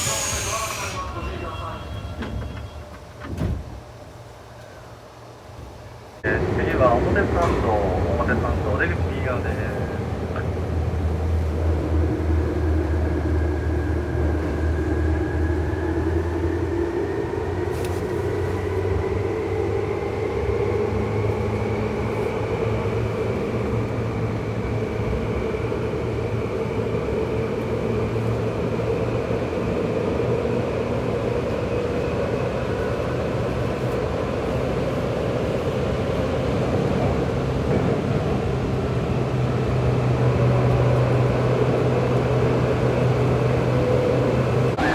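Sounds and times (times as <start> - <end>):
train wheels rumbling on rails: 0.0 - 44.9
traction motor whine: 44.4 - 44.9.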